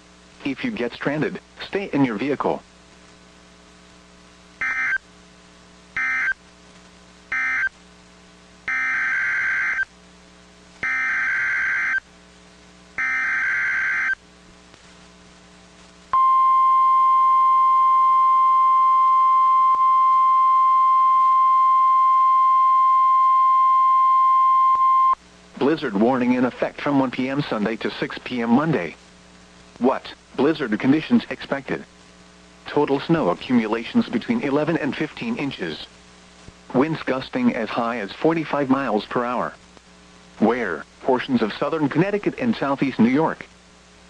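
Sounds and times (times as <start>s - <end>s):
steady warning alarm tone: 4.6s - 5.0s, 6.0s - 6.4s, 7.3s - 7.7s, 8.7s - 9.9s, 10.8s - 12.0s, 13.0s - 14.2s
radio data bursts: 7.3s - 7.7s.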